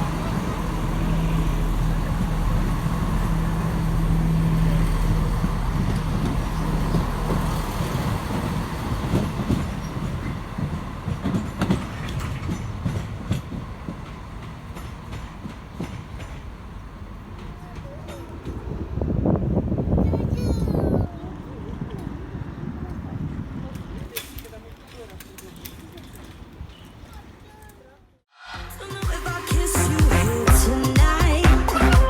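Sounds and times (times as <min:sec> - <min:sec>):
diesel train engine drone: 0:00.0 - 0:20.2
train wheels clicking on rails: 0:00.0 - 0:20.5, 0:21.6 - 0:27.8.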